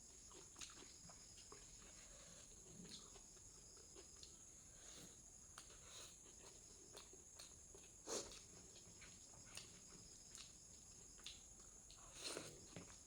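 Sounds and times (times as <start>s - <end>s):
soft chewing: 0.0s - 13.0s.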